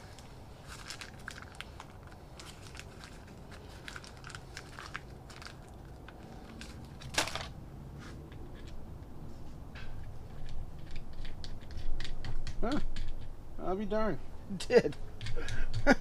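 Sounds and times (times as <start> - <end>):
metal clicks and scrapes of bolt: 9.8 - 13.3.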